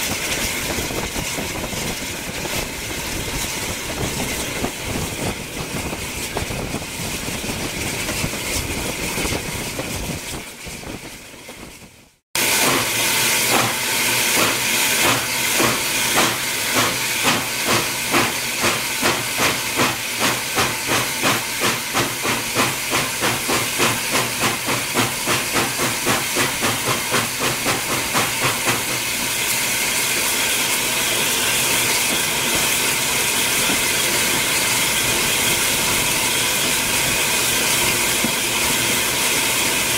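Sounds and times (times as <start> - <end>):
steam locomotive exhaust beats: 0.0 - 39.9
steam hiss: 12.4 - 39.9.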